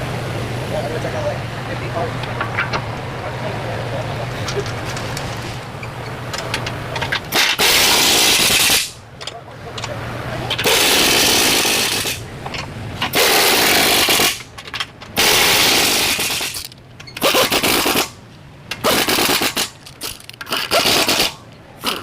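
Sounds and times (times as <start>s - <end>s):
impact wrench hammering: 6.4s - 9.0s.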